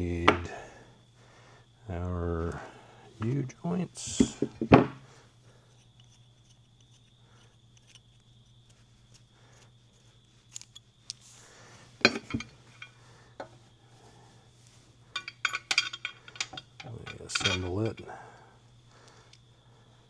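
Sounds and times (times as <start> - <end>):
steady low hum: 0.0 - 20.0
metal hardware clinking: 12.0 - 13.6, 15.1 - 18.4.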